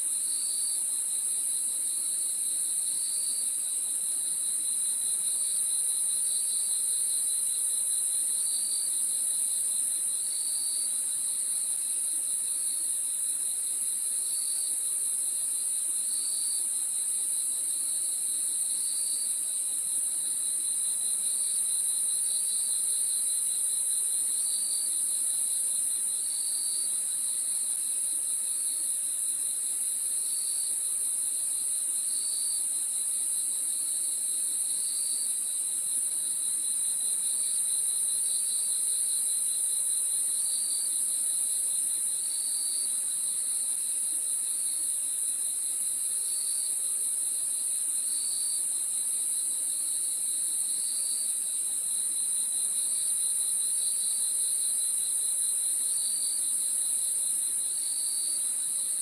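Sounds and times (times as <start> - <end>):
lower insect chirp: 0.0 - 59.0
crickets trilling: 28.6 - 59.0.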